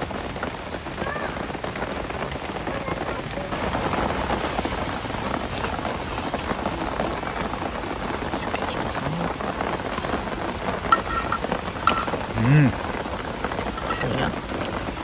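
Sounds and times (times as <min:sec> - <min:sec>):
heavy rain pouring: 0:00.0 - 0:15.0
sharp clinks: 0:10.9 - 0:12.3.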